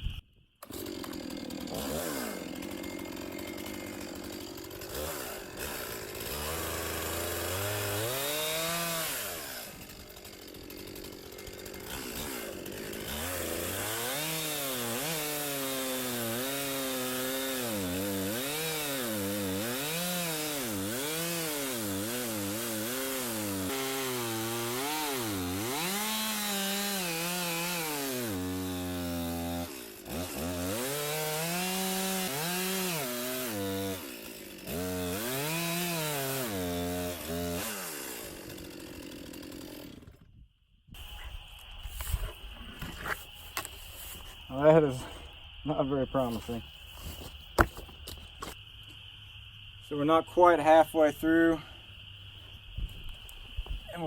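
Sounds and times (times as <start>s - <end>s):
chainsaw cutting into tree trunk: 0.6s - 40.4s.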